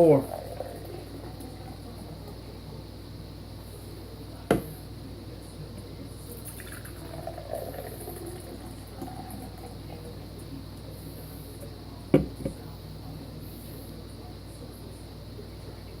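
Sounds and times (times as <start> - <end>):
beer pouring and fizzing: 0.0 - 1.0, 6.3 - 10.0.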